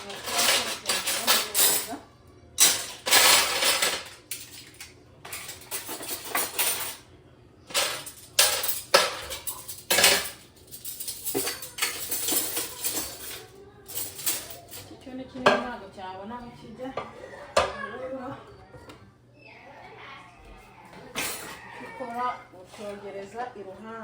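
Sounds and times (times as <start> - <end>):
dishes and cutlery clattering: 0.0 - 2.0, 2.6 - 7.1, 7.7 - 15.8, 16.9 - 17.9, 20.9 - 23.0.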